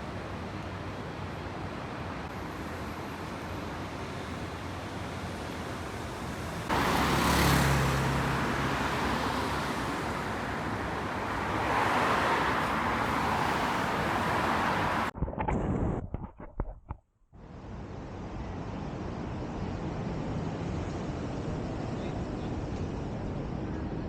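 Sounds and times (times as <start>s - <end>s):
tyre and engine noise: 2.2s - 16.0s
vehicle passing: 6.4s - 15.1s.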